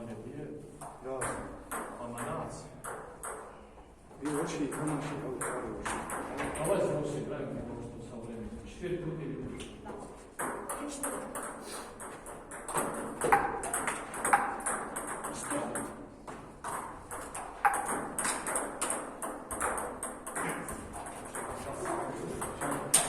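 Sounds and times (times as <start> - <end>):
table tennis ball clicks: 16.6 - 23.0.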